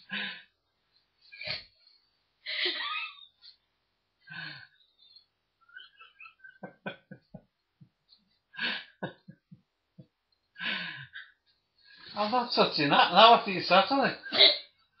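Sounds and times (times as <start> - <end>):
person gasping: 10.6 - 11.2.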